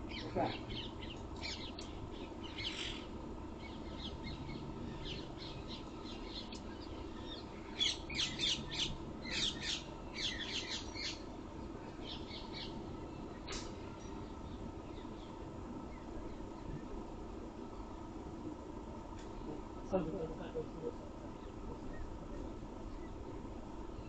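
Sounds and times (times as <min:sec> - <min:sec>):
birds chirping and squawking: 0:00.0 - 0:11.3, 0:11.9 - 0:16.8
steady background hum: 0:00.0 - 0:24.0.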